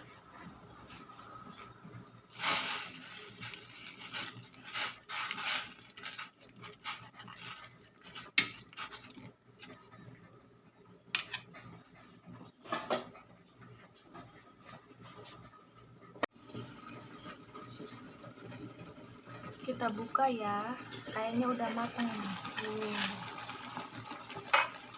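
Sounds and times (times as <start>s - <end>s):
cookware scraping and rubbing: 0.2s - 10.0s.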